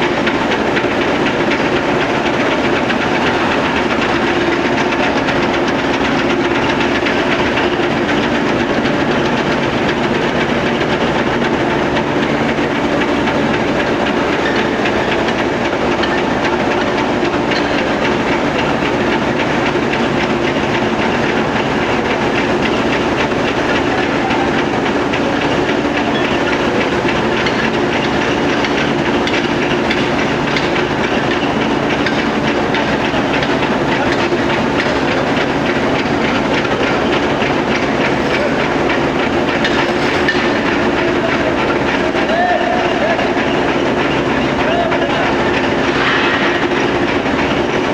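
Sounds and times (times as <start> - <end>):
machinery hissing and humming: 0.0 - 47.9.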